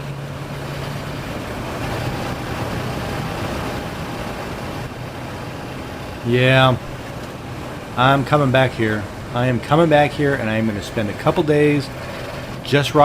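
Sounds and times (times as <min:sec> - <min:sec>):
motorcycle engine hum: 0:00.0 - 0:13.0
wind and road noise: 0:00.0 - 0:13.0.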